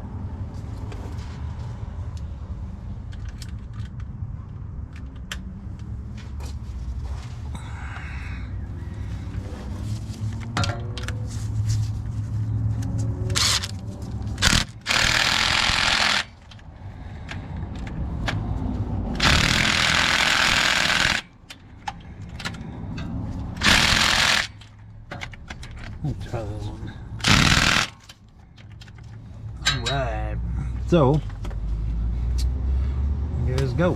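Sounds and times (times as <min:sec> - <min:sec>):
hand tools clicking and clanking: 0:10.3 - 0:11.3, 0:13.3 - 0:18.4, 0:19.1 - 0:26.3, 0:27.2 - 0:30.1
power tool running: 0:14.4 - 0:16.4, 0:19.2 - 0:21.3, 0:23.6 - 0:24.7, 0:27.2 - 0:28.1.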